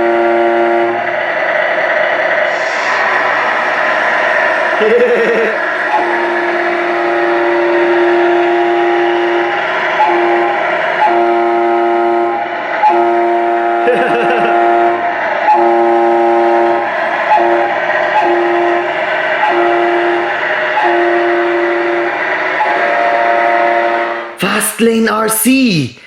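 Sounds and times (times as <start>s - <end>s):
truck air horn blasts: 0.0s - 1.1s, 5.8s - 24.4s.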